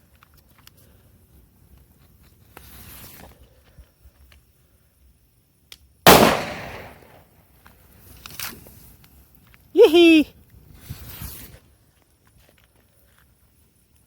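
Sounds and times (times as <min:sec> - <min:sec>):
firecracker bang: 0:06.1 - 0:07.2
brief hiss: 0:10.7 - 0:11.7.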